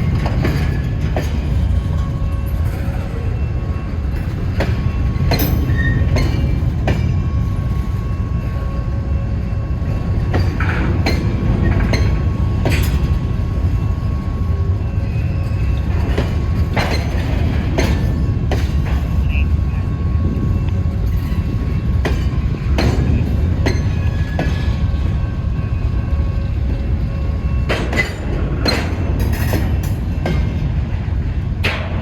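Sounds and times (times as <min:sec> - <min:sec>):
freight cars rumbling: 0:00.0 - 0:32.0
wheels clacking over rail joints: 0:10.1 - 0:13.8, 0:15.4 - 0:19.3, 0:20.7 - 0:32.0.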